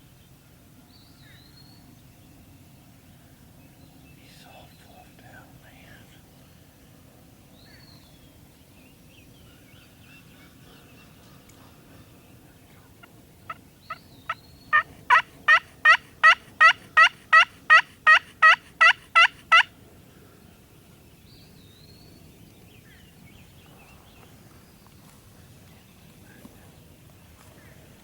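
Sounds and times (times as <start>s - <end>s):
turkey yelps: 14.7s - 19.7s.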